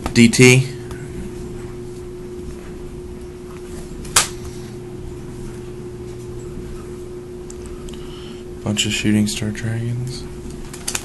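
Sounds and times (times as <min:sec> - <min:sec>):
steady low hum: 0:00.0 - 0:11.0
plastic page snapping: 0:10.7 - 0:11.0.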